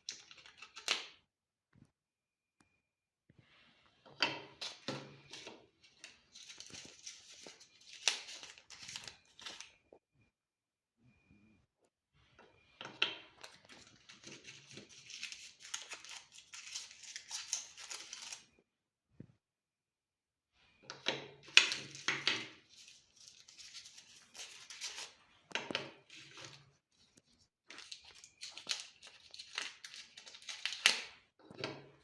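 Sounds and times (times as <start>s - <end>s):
plastic wrappers tearing and crinkling: 4.6s - 9.7s, 13.4s - 18.5s, 21.6s - 25.1s, 27.7s - 31.1s.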